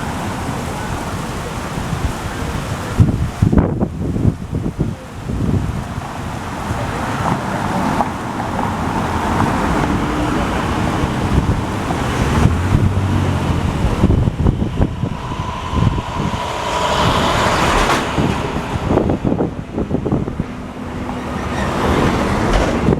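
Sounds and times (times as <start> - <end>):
road traffic: 0.0 - 22.9
wind buffeting microphone: 0.0 - 22.9
vehicle engine passing: 6.7 - 22.9.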